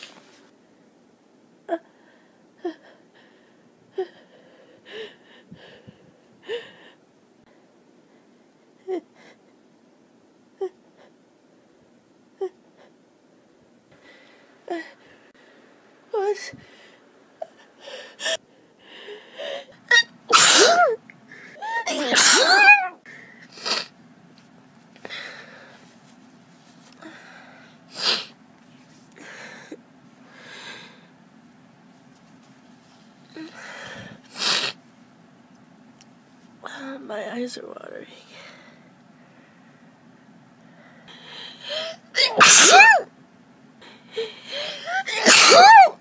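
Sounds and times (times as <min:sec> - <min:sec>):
person sneezing: 0:19.9 - 0:21.0, 0:21.6 - 0:23.9, 0:41.7 - 0:43.1, 0:44.6 - 0:46.0.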